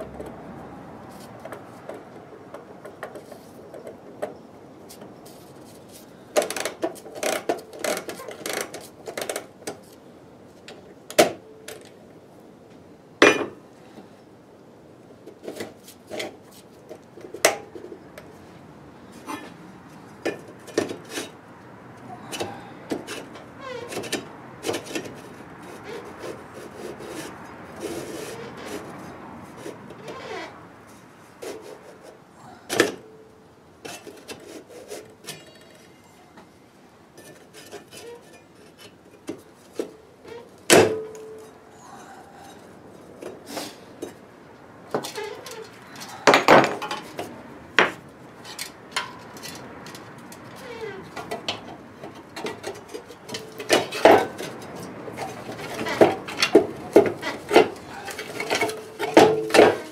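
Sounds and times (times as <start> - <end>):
metal parts clinking and scraping: 33.8 - 36.3, 52.4 - 59.9.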